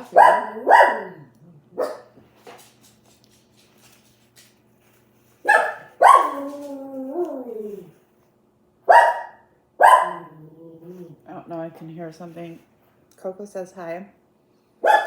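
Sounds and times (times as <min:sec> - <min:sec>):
dog barking: 0:00.0 - 0:02.2, 0:05.4 - 0:06.6, 0:08.9 - 0:10.4, 0:14.8 - 0:15.0
dog whining: 0:05.5 - 0:08.0.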